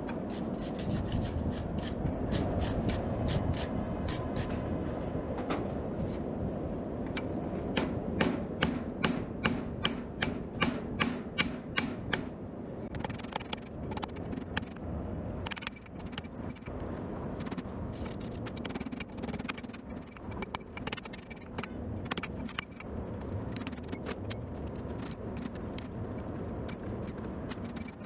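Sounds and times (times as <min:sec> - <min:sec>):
hammer striking steel on anvil: 0:07.7 - 0:12.3.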